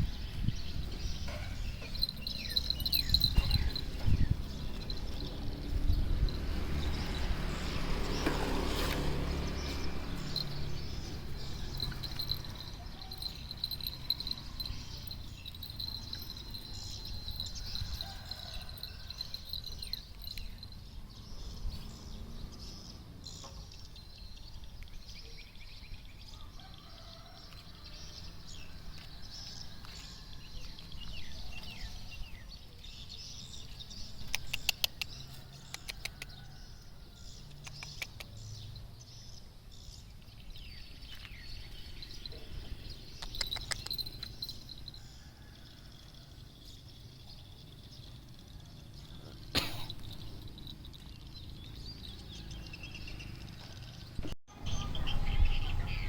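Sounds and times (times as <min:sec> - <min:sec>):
small birds chirping: 0:00.0 - 0:36.6, 0:37.2 - 0:56.0
quick run of clicks: 0:34.3 - 0:36.4, 0:43.2 - 0:44.4.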